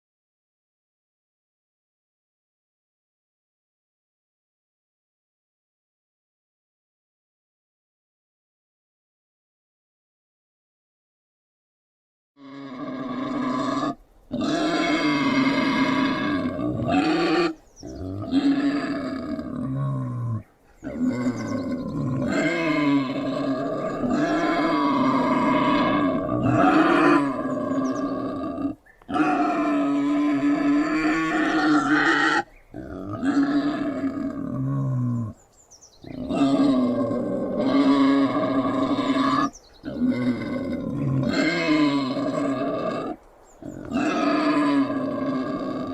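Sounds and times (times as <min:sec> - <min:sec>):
wild boar growling: 0:12.4 - 0:35.4, 0:36.0 - 0:45.9.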